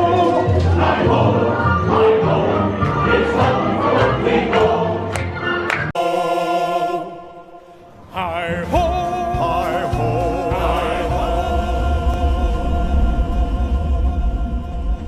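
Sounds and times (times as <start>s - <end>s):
choir singing: 0.0s - 15.0s.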